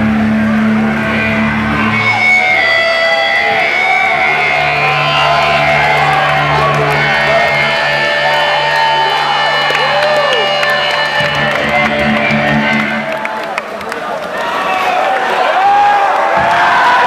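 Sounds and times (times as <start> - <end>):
rock band with distorted guitar: 0.0 - 13.3.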